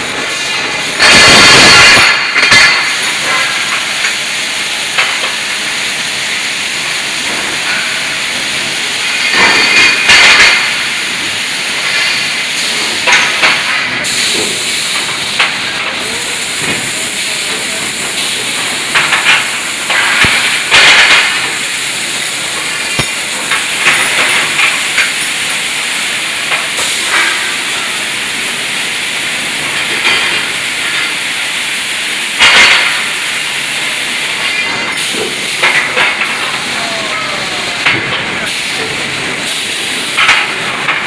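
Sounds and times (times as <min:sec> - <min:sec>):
welding machine hissing: 0:00.0 - 0:41.0.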